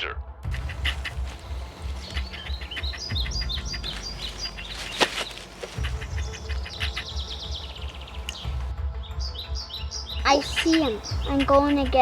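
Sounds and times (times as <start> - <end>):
birds chirping and trilling: 0.5 - 12.0.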